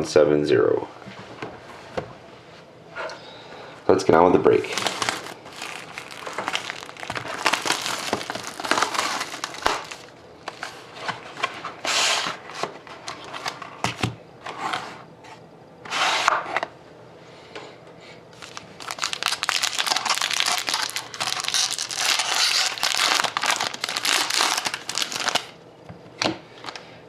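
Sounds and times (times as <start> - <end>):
plastic wrapping crinkling: 4.5 - 10.8, 18.4 - 25.6
plastic wrapping ripping: 4.6 - 10.1, 18.4 - 25.6.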